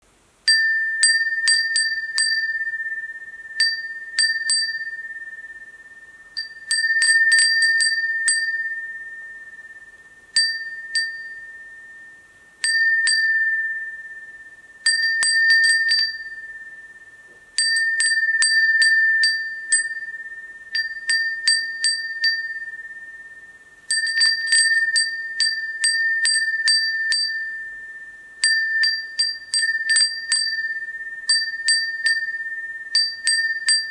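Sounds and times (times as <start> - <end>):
glass wind bell clinking: 0.5 - 33.9.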